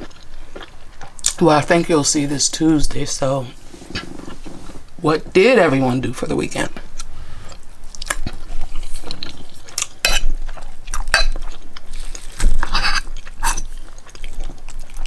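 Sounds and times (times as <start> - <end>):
cutlery against a dish: 10.0 - 10.3, 11.0 - 11.5
wet mouth noises: 12.5 - 14.4.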